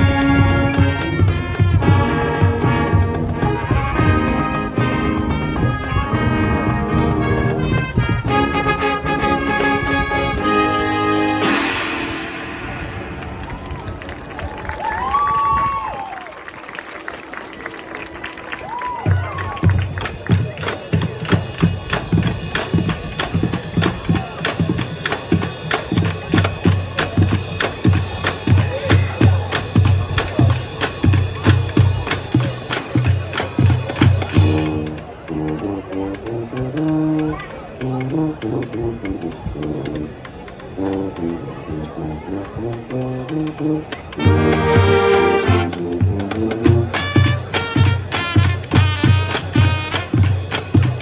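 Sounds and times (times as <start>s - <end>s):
bass drums: 0.0s - 10.8s, 44.2s - 51.0s
snare drums: 0.0s - 13.4s, 19.1s - 51.0s
marching band playing: 0.0s - 15.4s, 16.5s - 51.0s
drum hits: 44.2s - 51.0s.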